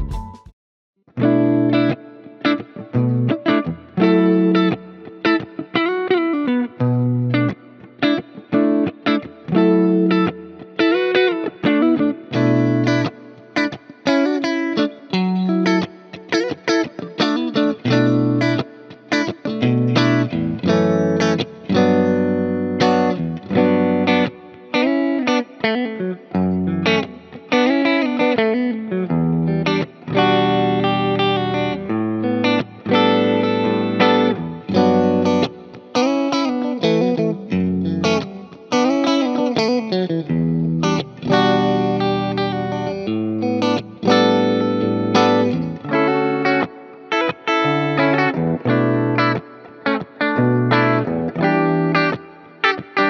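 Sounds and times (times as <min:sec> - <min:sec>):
backing track: 0:00.0 - 0:00.5
electric guitar lead with bends: 0:01.1 - 0:53.0.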